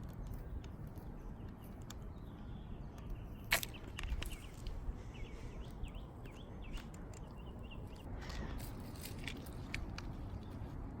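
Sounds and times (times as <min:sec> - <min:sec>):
light clicks: 0:00.0 - 0:04.8
low wind rumble: 0:00.0 - 0:11.0
small birds chirping: 0:00.0 - 0:11.0.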